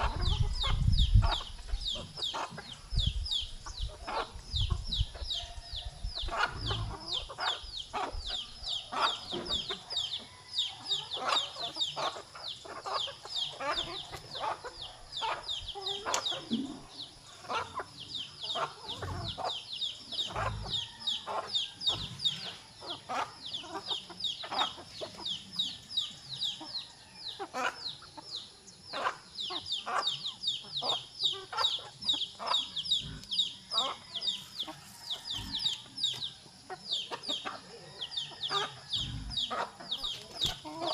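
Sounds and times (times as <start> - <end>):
chickens clucking: 0.0 - 40.9
chicks cheeping: 0.0 - 40.9.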